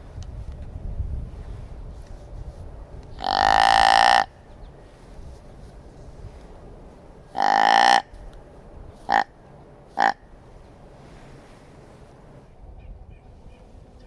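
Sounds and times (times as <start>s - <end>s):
deer grunt call: 3.2s - 4.4s, 7.3s - 8.2s, 9.0s - 9.4s, 10.0s - 10.2s.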